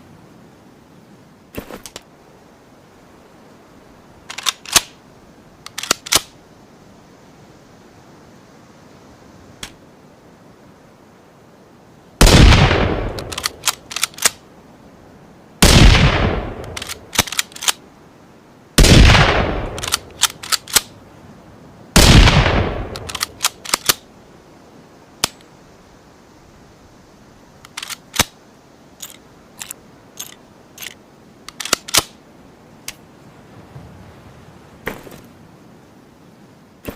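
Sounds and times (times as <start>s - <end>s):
sharp clicks: 4.3s - 5.0s, 5.7s - 6.3s, 13.1s - 14.4s, 16.6s - 17.8s, 19.7s - 20.9s, 22.9s - 24.0s, 27.6s - 28.4s, 29.0s - 32.2s
loud rifle shots: 12.2s - 13.4s, 15.6s - 16.8s, 18.8s - 20.0s, 22.0s - 23.2s.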